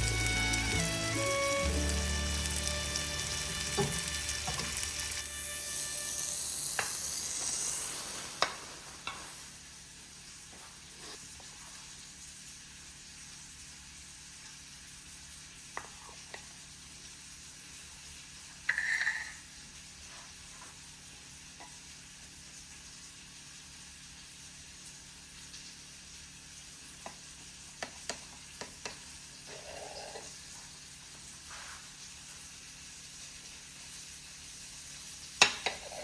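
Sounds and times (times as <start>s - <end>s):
food sizzling in a frying pan: 0.0s - 36.0s
utensils clicking against pan: 18.7s - 19.4s.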